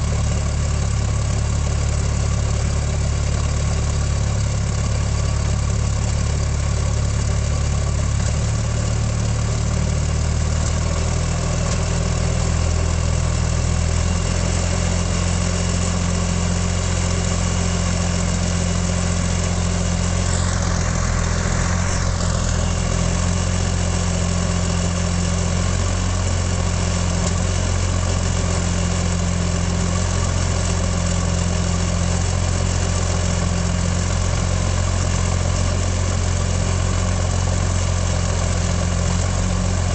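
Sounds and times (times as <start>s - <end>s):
aircraft engine running: 17.0s - 26.4s.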